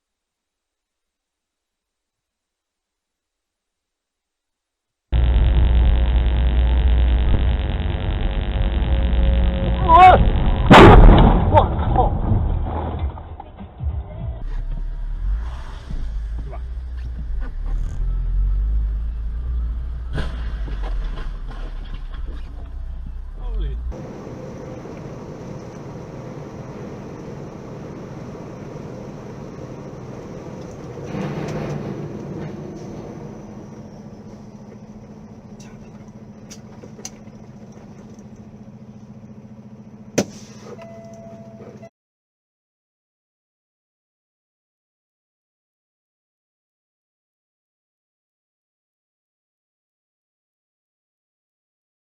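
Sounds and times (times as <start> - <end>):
car driving rumble: 5.2 - 40.7
loud sharp impact bang: 10.2 - 12.8, 20.1 - 21.1.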